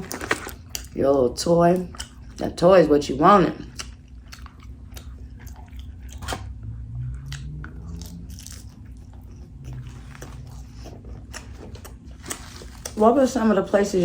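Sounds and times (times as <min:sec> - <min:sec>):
person chewing food: 0:01.8 - 0:02.4, 0:03.6 - 0:13.0.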